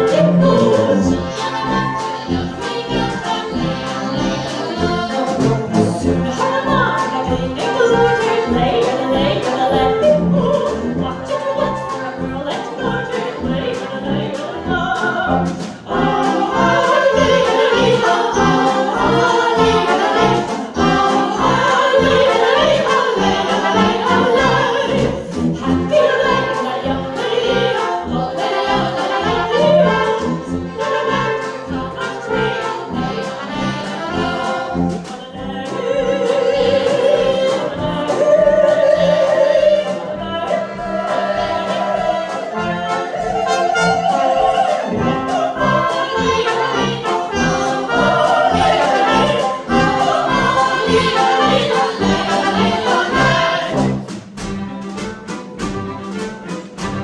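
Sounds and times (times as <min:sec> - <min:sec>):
children's choir singing: 0:00.0 - 0:57.0
instrumental accompaniment with beat: 0:00.0 - 0:57.0.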